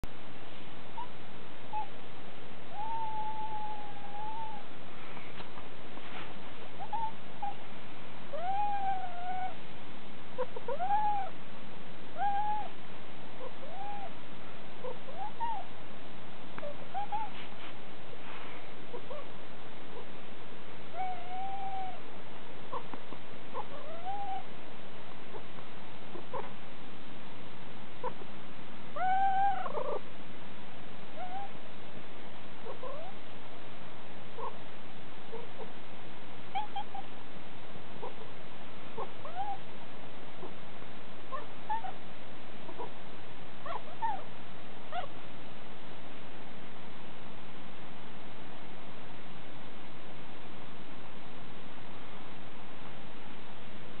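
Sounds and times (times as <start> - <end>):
cat meowing: 2.7 - 4.6, 8.3 - 9.6, 10.4 - 11.3, 13.4 - 14.1, 16.6 - 17.5, 20.9 - 22.0, 23.6 - 24.4, 29.0 - 30.0, 31.2 - 31.5, 32.6 - 33.2, 36.5 - 37.1, 39.0 - 39.6, 43.6 - 44.3, 44.9 - 45.1.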